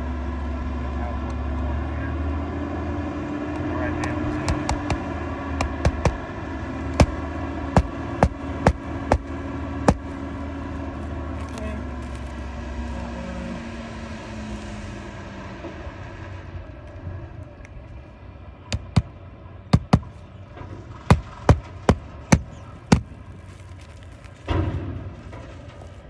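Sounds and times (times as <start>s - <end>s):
passing vehicle engine: 0.0s - 17.8s
hammer striking nails: 4.4s - 6.3s, 6.9s - 10.2s, 18.8s - 19.1s, 19.8s - 20.2s, 21.0s - 23.1s.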